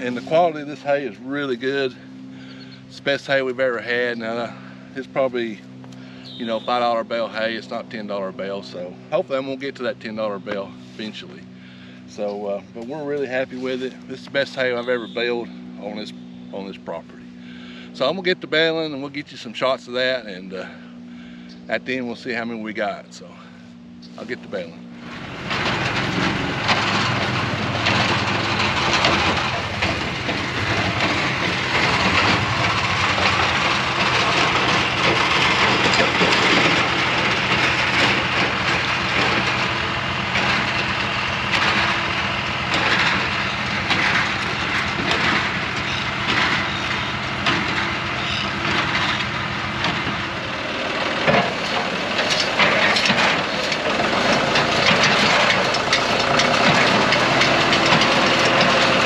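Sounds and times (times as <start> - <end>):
tractor engine drone: 0.0 - 59.0
baler plunger clacking and crunching: 25.1 - 59.0.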